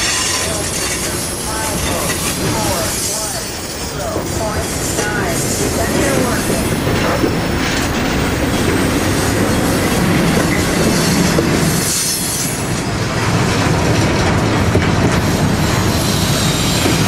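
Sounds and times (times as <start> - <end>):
wheel squealing: 0.0 - 3.9
railroad cars rumbling: 0.0 - 17.0
wheels clacking over rail joints: 0.0 - 17.0.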